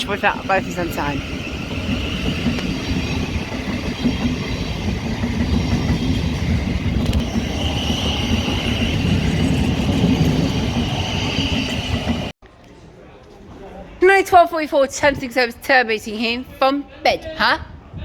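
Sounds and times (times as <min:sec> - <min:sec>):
train wheels rumbling on rails: 0:00.0 - 0:12.4.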